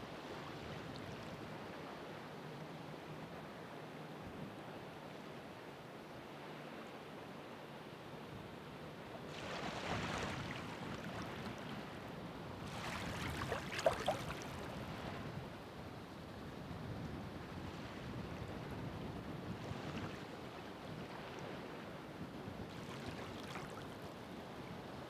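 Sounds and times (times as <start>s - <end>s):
ocean waves: 9.2s - 15.2s, 22.7s - 24.1s
water splashes: 9.3s - 11.8s, 12.6s - 14.8s, 22.7s - 24.0s.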